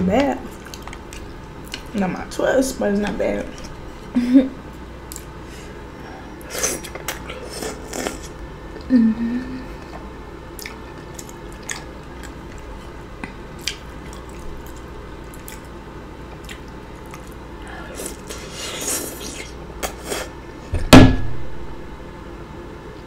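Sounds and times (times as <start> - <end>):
chewing smacks and clicks: 0.6 - 1.9, 10.6 - 17.4.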